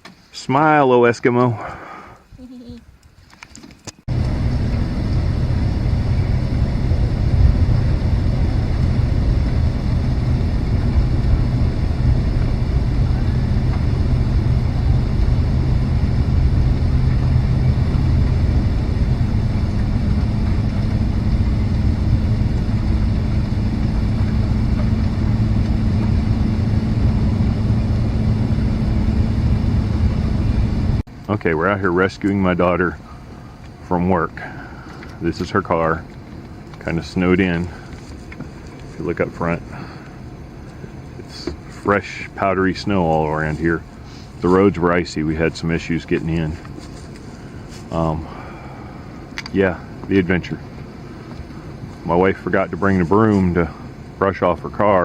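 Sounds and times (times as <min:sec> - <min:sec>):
dense rushing noise: 0:04.1 - 0:31.6
truck engine running: 0:04.1 - 0:55.0.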